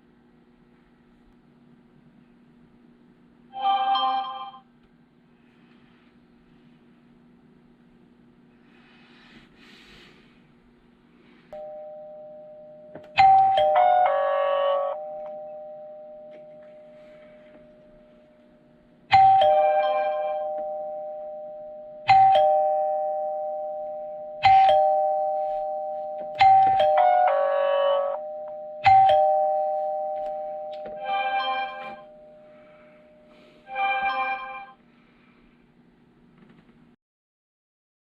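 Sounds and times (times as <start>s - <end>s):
steady low hum: 0.0s - 3.6s, 4.6s - 31.1s, 31.7s - 33.7s
doorbell chime ding-dong: 3.5s - 4.6s, 11.5s - 34.8s.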